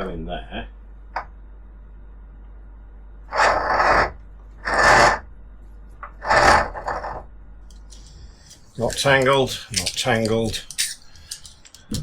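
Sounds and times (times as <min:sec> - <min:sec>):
rope rubbing and scraping: 0:03.3 - 0:05.2, 0:06.2 - 0:07.2.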